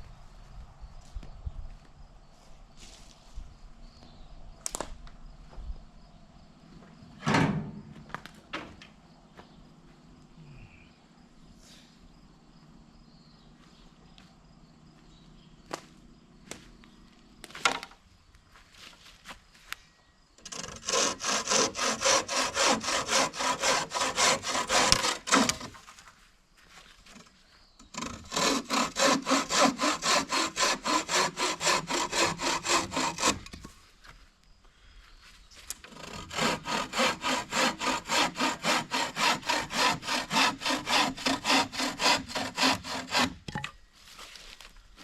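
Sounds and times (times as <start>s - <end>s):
hand saw cutting wood: 20.4s - 25.8s, 27.2s - 33.7s, 35.7s - 43.5s.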